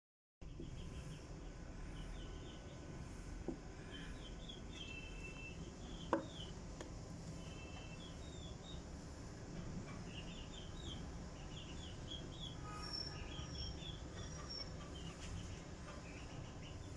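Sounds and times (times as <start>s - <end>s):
outdoor background noise: 0.4s - 16.9s
faint high chirps: 3.8s - 6.5s.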